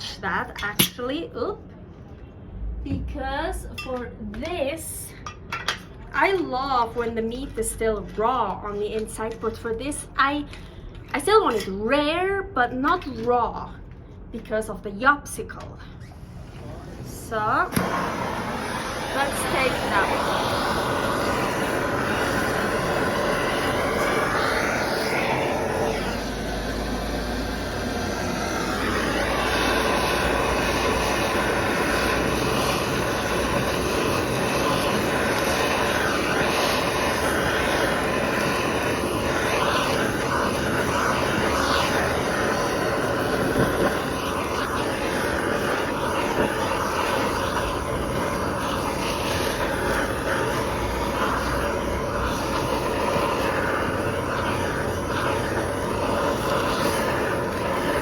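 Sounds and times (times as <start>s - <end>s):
blowtorch roaring hiss: 0.0s - 1.2s, 16.0s - 58.0s.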